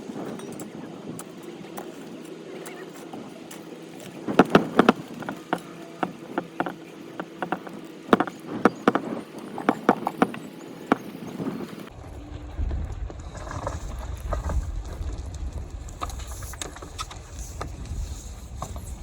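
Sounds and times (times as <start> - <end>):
machine hum: 0.0 - 16.0
sharp knocks and clacks: 4.3 - 11.1.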